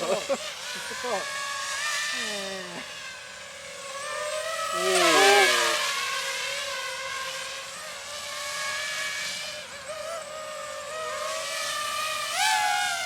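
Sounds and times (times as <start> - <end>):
drone propellers whining: 0.0 - 6.5.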